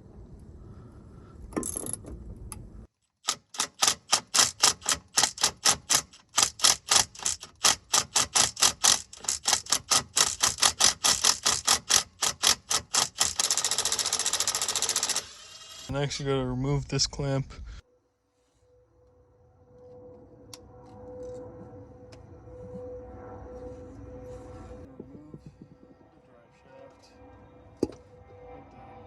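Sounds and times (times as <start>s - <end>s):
ratchet wrench clicking: 3.2s - 15.9s.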